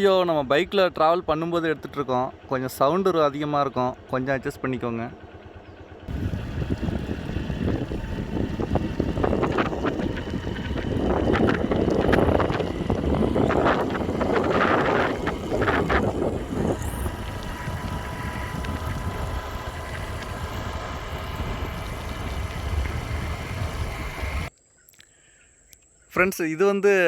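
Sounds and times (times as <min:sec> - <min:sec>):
motorcycle engine: 0:00.0 - 0:24.5
road noise: 0:05.2 - 0:24.5
wind buffeting microphone: 0:06.1 - 0:24.5.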